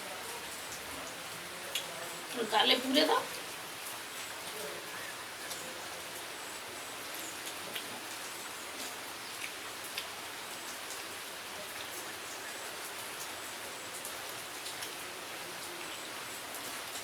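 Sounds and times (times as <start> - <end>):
steady rain hiss: 0.0 - 17.0
raindrops ticking: 0.6 - 6.2.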